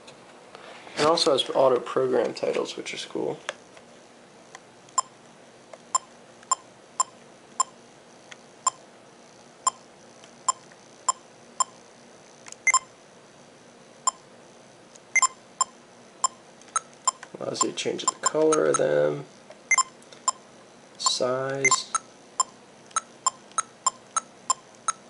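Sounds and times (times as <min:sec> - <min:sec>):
camcorder electronic beeps: 0:05.9 - 0:07.8, 0:12.6 - 0:12.9, 0:15.2 - 0:18.9, 0:19.7 - 0:20.4, 0:21.6 - 0:25.0.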